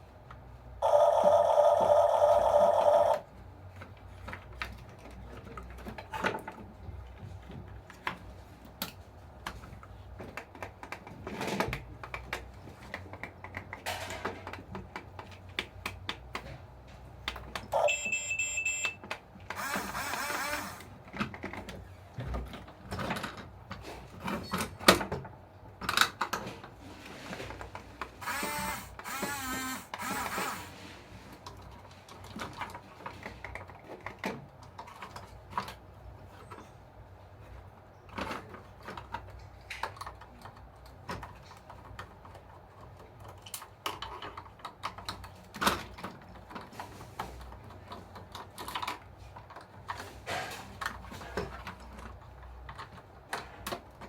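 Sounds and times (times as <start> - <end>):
short whirring bursts: 19.5 - 20.9, 28.2 - 30.8
loud buzzing tone: 28.2 - 30.7
tools clicking and tapping: 28.2 - 30.7.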